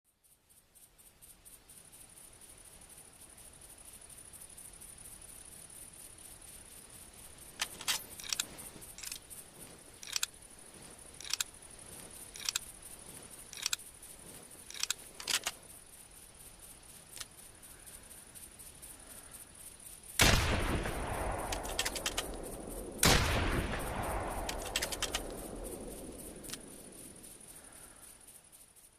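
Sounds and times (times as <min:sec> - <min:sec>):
faint steady hiss: 0:00.1 - 0:28.9
rifle bolt clicking: 0:07.6 - 0:09.2, 0:14.7 - 0:15.6, 0:21.4 - 0:22.4, 0:24.4 - 0:25.4.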